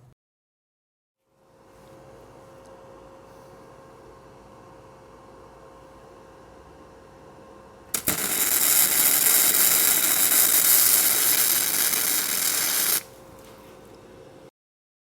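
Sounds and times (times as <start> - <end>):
arc welding crackling hiss: 8.0 - 13.2.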